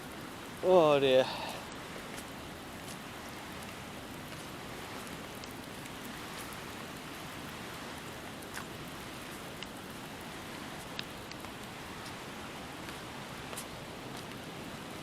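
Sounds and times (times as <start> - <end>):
steady rain hiss: 0.0 - 15.0
single raindrop ticks: 1.7 - 7.6, 8.4 - 12.2.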